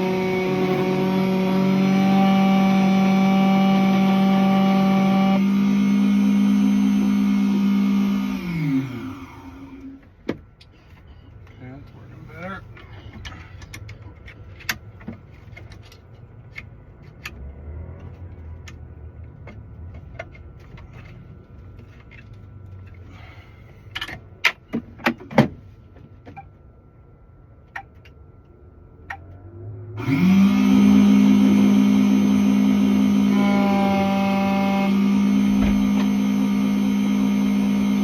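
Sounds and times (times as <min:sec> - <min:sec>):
machine motor whine: 0:00.0 - 0:10.0, 0:29.3 - 0:38.0.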